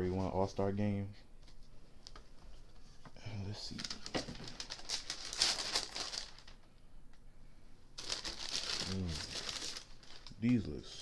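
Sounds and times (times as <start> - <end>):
tissue paper rustling and crinkling: 3.6 - 6.6, 8.0 - 10.8.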